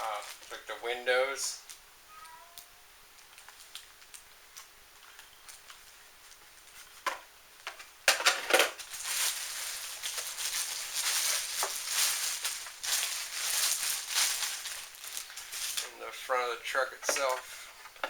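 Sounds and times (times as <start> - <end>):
plastic packaging crinkling: 0.0 - 0.7, 2.6 - 7.0, 8.1 - 17.4.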